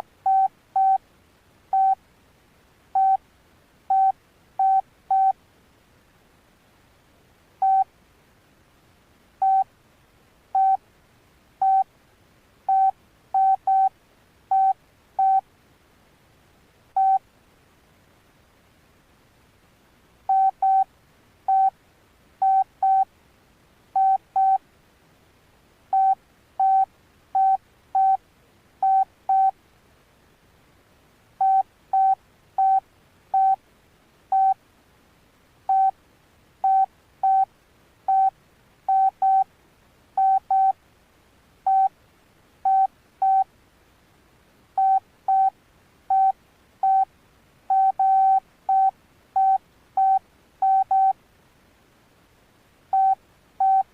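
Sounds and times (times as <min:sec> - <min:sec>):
phone keypad beeps: 0:00.2 - 0:01.0, 0:01.7 - 0:02.0, 0:03.0 - 0:03.2, 0:03.9 - 0:05.4, 0:07.6 - 0:07.9, 0:09.4 - 0:09.7, 0:10.6 - 0:10.8, 0:11.6 - 0:11.8, 0:12.7 - 0:13.9, 0:14.5 - 0:15.4, 0:17.0 - 0:17.2, 0:20.3 - 0:20.8, 0:21.5 - 0:21.7, 0:22.4 - 0:23.1, 0:24.0 - 0:24.6, 0:25.9 - 0:28.2, 0:28.8 - 0:29.5, 0:31.4 - 0:32.8, 0:33.4 - 0:33.6, 0:34.3 - 0:34.6, 0:35.7 - 0:35.9, 0:36.6 - 0:37.5, 0:38.1 - 0:38.3, 0:38.9 - 0:39.4, 0:40.2 - 0:40.8, 0:41.7 - 0:41.9, 0:42.7 - 0:43.4, 0:44.8 - 0:45.5, 0:46.1 - 0:47.1, 0:47.7 - 0:51.2, 0:52.9 - 0:53.9.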